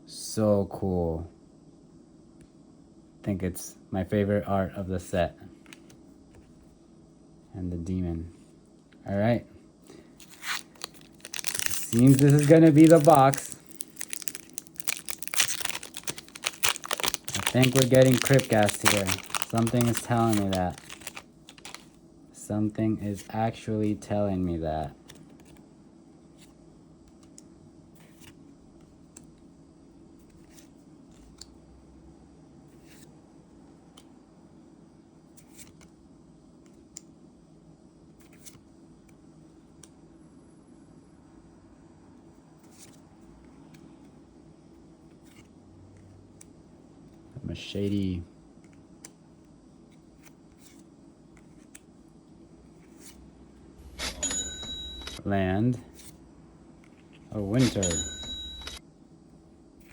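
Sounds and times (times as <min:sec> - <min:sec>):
low steady hum: 0:00.0 - 0:59.9
trading cards rustling and clicking: 0:09.9 - 0:22.0, 0:56.8 - 0:58.8.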